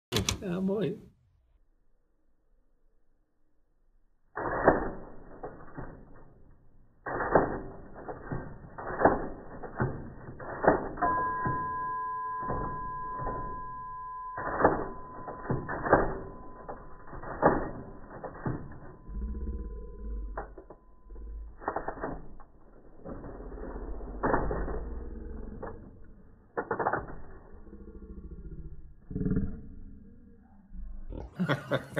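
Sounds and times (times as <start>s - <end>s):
slowed typewriter keys clacking: 4.4s - 27.7s.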